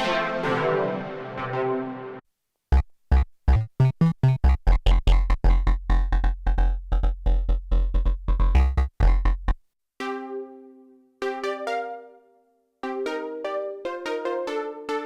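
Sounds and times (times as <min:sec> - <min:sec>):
synthesizer bass note pattern: 0:02.7 - 0:12.2
higher synthesizer notes: 0:10.0 - 0:15.0.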